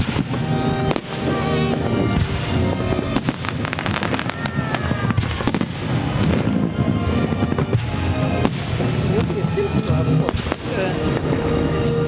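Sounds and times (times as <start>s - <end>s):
fireworks crackling pops: 0.0s - 12.0s
fireworks cracks: 0.0s - 12.0s
low rumble: 0.0s - 12.0s
falling whistle: 2.1s - 6.7s.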